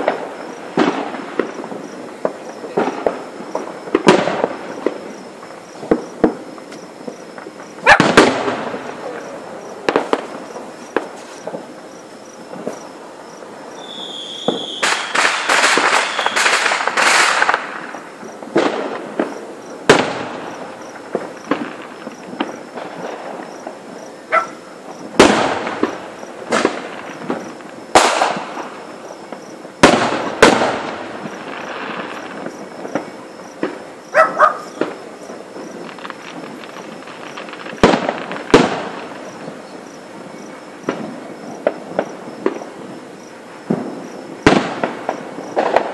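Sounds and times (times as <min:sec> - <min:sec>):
firework shells bursting: 0:00.0 - 0:11.7, 0:13.7 - 0:40.0, 0:43.6 - 0:45.9
firework crackling: 0:00.0 - 0:45.9
high firework whistle: 0:13.7 - 0:18.4.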